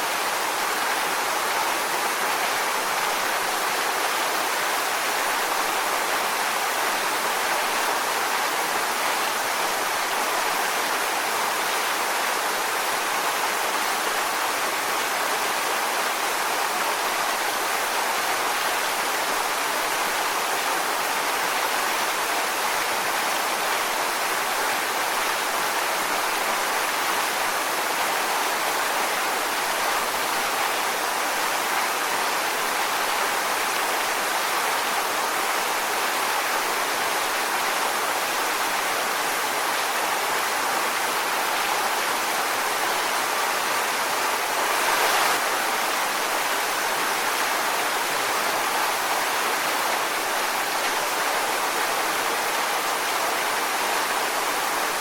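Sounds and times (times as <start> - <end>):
waterfall splashing onto rocks: 44.5 - 48.4.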